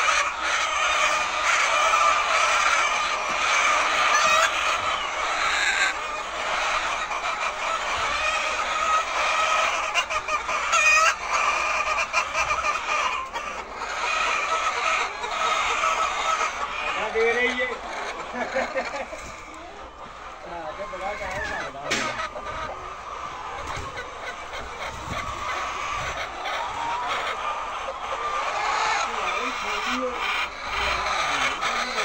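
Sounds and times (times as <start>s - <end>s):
hens clucking: 0.0s - 32.0s.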